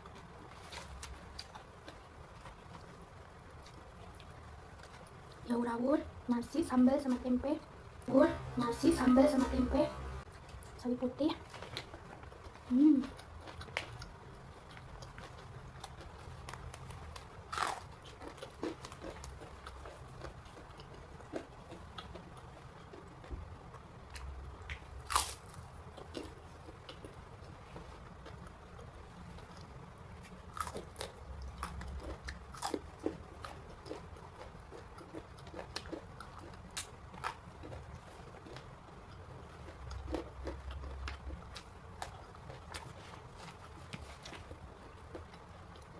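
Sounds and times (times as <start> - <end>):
soft chewing with crunches: 0.0 - 5.5, 9.3 - 45.9
crunchy bites: 15.0 - 22.3, 24.1 - 27.1.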